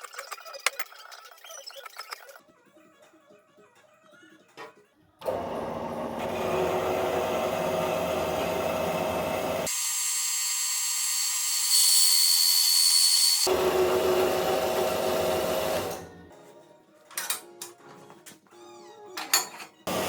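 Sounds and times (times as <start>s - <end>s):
bandsaw cutting steel: 6.3s - 16.0s.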